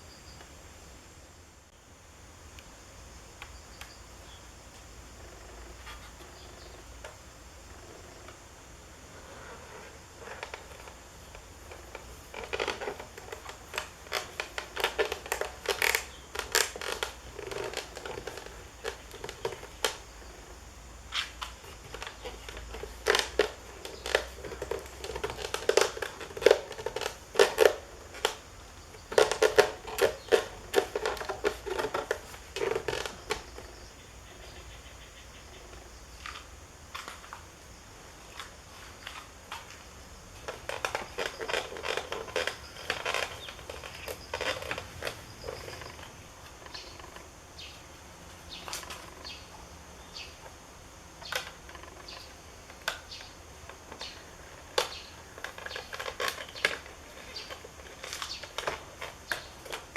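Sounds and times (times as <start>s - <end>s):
sharp clicks and scraping: 9.2s - 33.8s, 38.3s - 47.3s, 51.2s - 59.9s.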